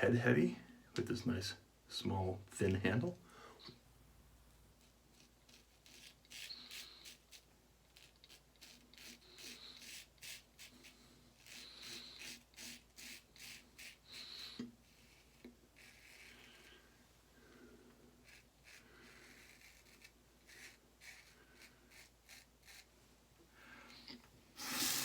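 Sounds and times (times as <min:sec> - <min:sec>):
razor rasping through stubble: 0:04.8 - 0:16.9, 0:18.2 - 0:22.9, 0:24.6 - 0:25.0.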